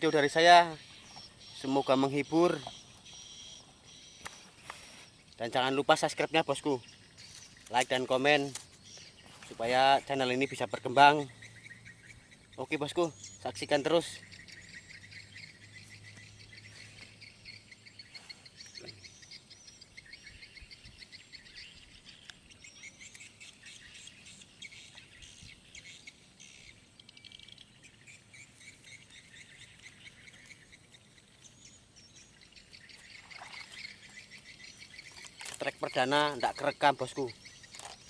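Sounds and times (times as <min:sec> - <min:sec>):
birds and insects chirping: 0:00.0 - 0:38.0.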